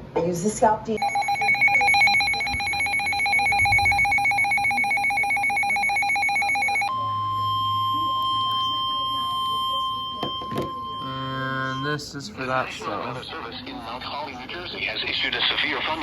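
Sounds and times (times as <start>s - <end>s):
fast-trilling electronic ring: 1.0s - 8.1s
steady alarm tone: 1.0s - 12.0s.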